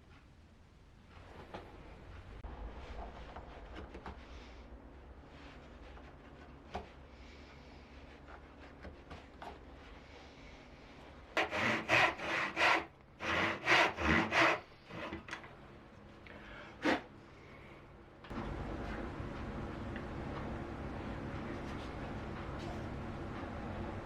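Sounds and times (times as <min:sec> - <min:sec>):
hand tool scraping wood: 0:11.4 - 0:15.4, 0:16.8 - 0:17.1.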